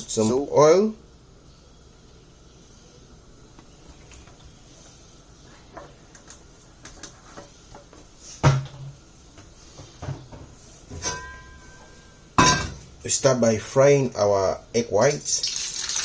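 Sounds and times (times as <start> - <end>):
utensils and cookware knocking: 11.0 - 12.8.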